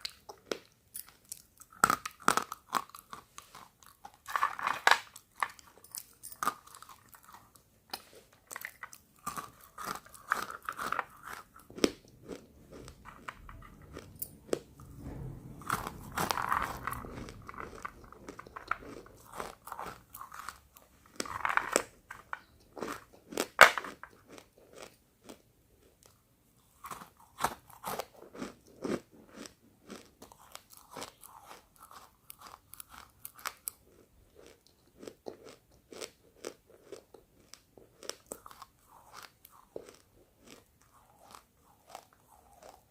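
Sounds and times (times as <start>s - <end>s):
biting and chewing chalk: 8.8s - 14.7s.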